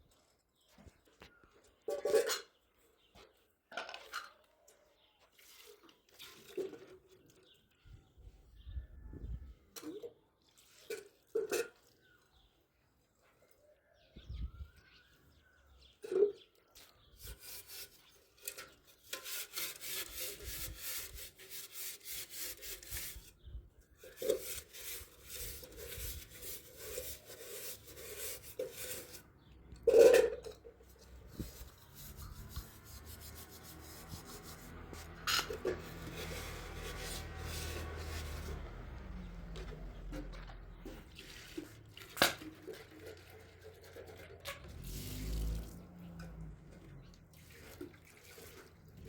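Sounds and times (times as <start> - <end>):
rhythmic scraping strokes: 19.1 - 23.3, 24.2 - 29.3, 31.3 - 38.6.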